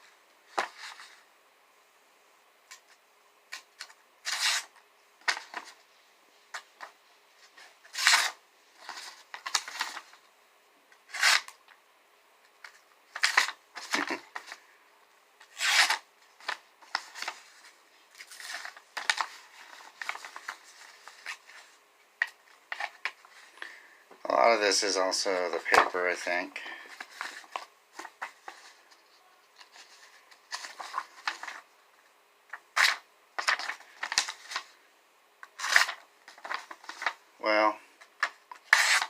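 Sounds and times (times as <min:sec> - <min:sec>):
knife slicing paper: 0:38.6 - 0:39.0.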